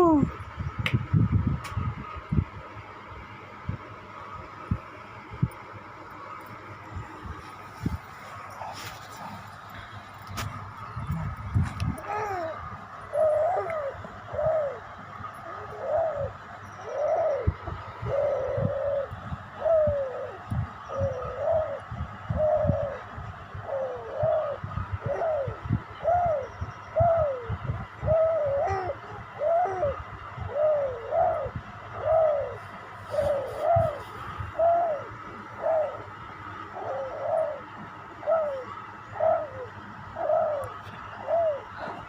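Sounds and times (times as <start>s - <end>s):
baby cooing: 11.9s - 13.9s, 28.5s - 30.0s.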